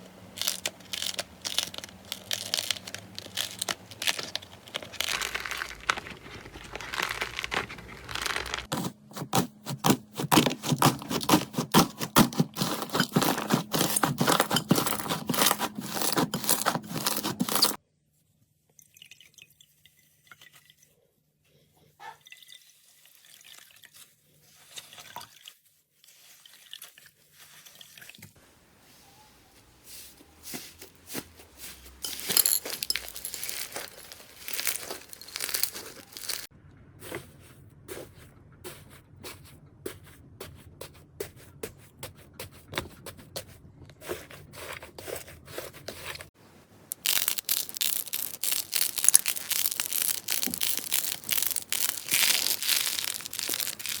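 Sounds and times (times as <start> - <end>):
wet slime squishing: 0.0 - 17.8, 32.2 - 36.5, 46.8 - 54.0.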